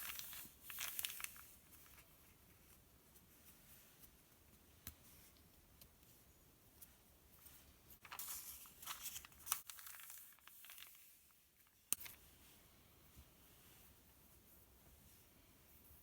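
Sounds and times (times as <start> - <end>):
paper pages rustling: 0.0 - 2.4, 8.0 - 11.4.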